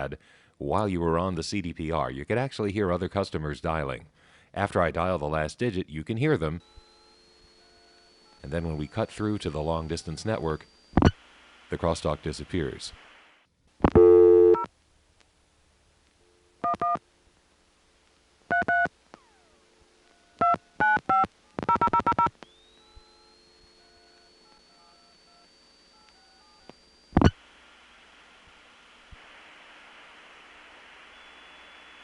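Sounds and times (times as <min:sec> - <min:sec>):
faint dial tone: 0:06.5 - 0:11.2, 0:13.8 - 0:14.7, 0:16.2 - 0:17.0, 0:18.5 - 0:32.0
faint high whistle: 0:22.4 - 0:27.1, 0:31.0 - 0:32.0
loud tone burst: 0:22.4 - 0:28.3, 0:30.0 - 0:32.0.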